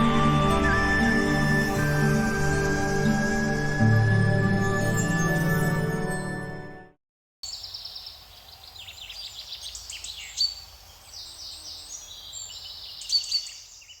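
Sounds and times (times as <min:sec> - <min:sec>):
songbirds singing: 0:07.4 - 0:14.0.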